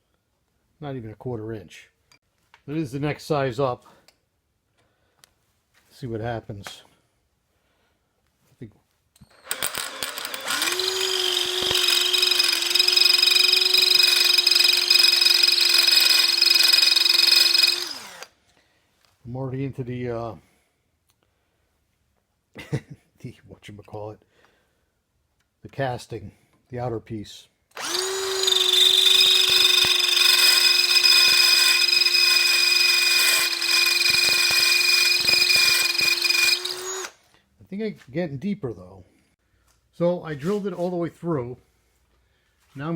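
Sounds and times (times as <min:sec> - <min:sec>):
electric drill whining: 0:09.2 - 0:18.3, 0:27.8 - 0:37.2.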